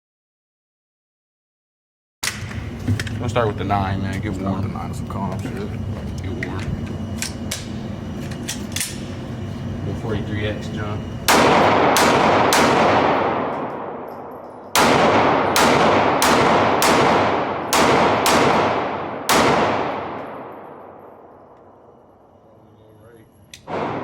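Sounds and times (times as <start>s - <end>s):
pistol shots echoing: 11.3s - 21.6s, 23.6s - 24.0s.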